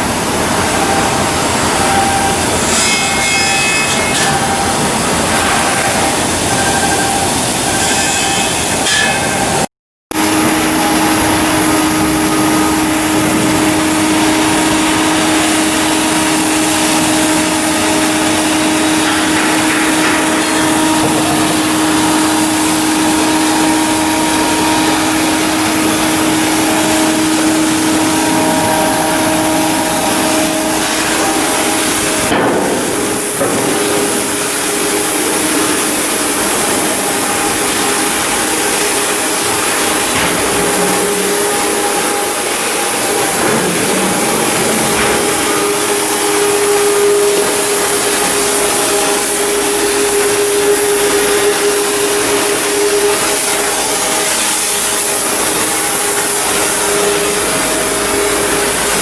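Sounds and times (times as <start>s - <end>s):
shipyard machinery running: 0.0s - 59.0s.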